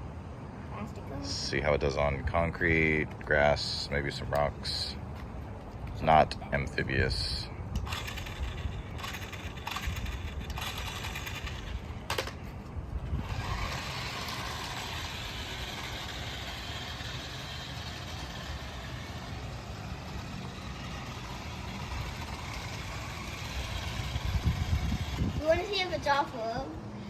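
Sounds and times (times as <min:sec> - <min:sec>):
toy electric motor and gears: 0:07.2 - 0:26.7.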